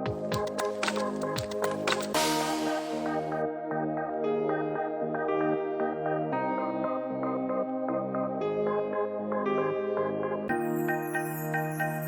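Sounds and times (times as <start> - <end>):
electronic music with steady beat: 0.0 - 3.4.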